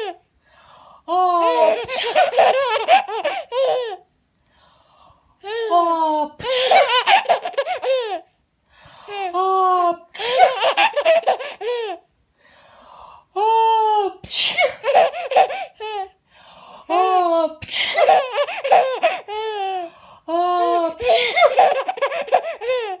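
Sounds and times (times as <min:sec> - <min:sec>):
baby laughing: 0:01.4 - 0:04.0, 0:06.4 - 0:08.3, 0:10.2 - 0:12.0, 0:14.6 - 0:16.1, 0:17.8 - 0:19.9, 0:20.6 - 0:23.0
woman sneezing: 0:01.8 - 0:02.3, 0:14.2 - 0:14.8, 0:17.6 - 0:18.0, 0:21.0 - 0:21.5.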